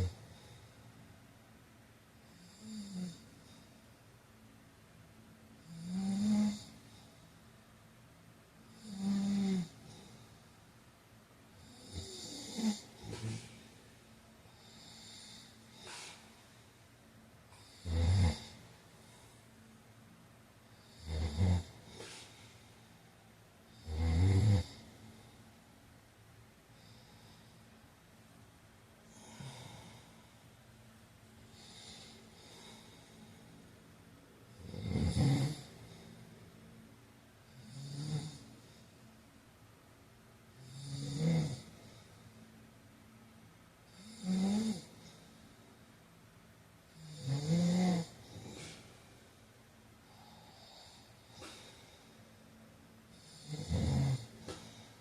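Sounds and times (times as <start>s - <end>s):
man snoring: 0.0s - 0.6s, 2.3s - 3.6s, 5.6s - 7.1s, 8.7s - 10.2s, 11.6s - 13.8s, 14.6s - 16.3s, 17.5s - 18.8s, 20.8s - 22.4s, 23.7s - 25.0s, 29.1s - 30.2s, 31.5s - 33.1s, 34.5s - 36.1s, 37.5s - 38.8s, 40.6s - 42.0s, 43.9s - 45.3s, 46.9s - 48.9s, 50.1s - 51.9s, 53.1s - 54.9s
quiet breathing: 0.0s - 55.0s.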